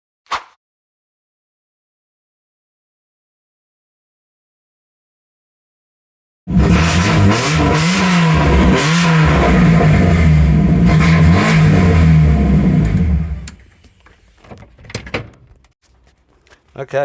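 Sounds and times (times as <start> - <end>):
car engine revving: 6.5 - 13.6.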